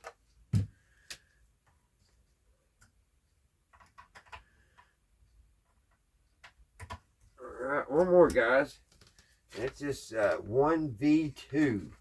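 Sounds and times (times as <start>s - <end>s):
faint clicks and light taps: 0.0s - 7.4s, 8.2s - 10.4s.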